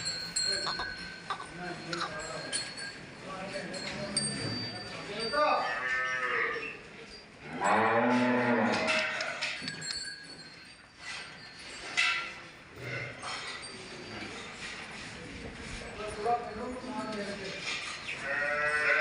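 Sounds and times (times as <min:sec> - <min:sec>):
cow mooing: 0:07.5 - 0:09.4, 0:18.2 - 0:19.0.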